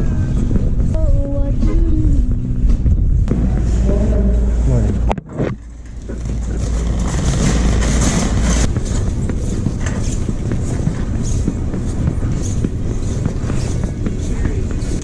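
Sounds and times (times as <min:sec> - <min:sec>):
car road and wind noise: 0:00.0 - 0:15.0.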